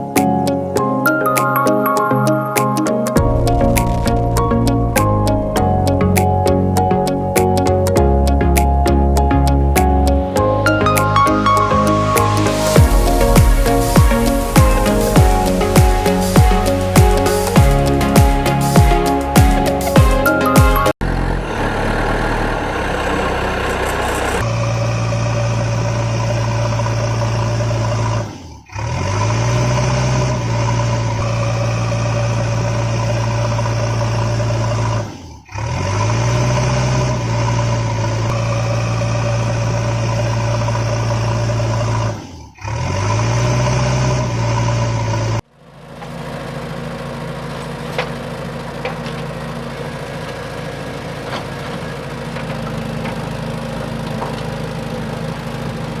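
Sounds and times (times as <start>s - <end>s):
low hum: 3.2s - 20.3s
engine idling and revving: 21.0s - 56.0s.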